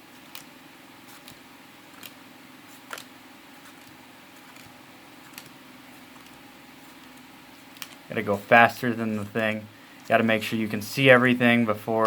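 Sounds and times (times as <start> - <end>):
steady low hum: 0.0 - 12.0
cards clicking and snapping: 0.2 - 0.5, 1.1 - 2.2, 2.8 - 3.1, 3.7 - 8.1.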